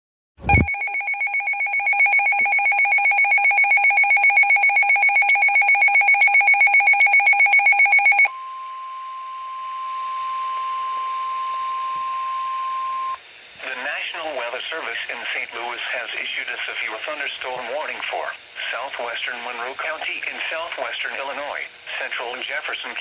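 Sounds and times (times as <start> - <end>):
rapidly pulsing electronic beep: 0.4 - 8.3
steady warning alarm tone: 0.4 - 13.2
radio hiss: 13.6 - 23.0.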